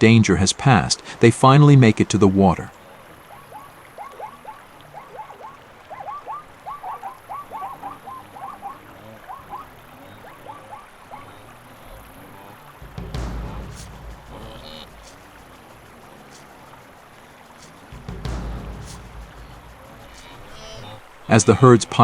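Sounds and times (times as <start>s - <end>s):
frogs calling: 2.6s - 22.0s
low rumble: 12.8s - 16.1s, 17.9s - 21.0s.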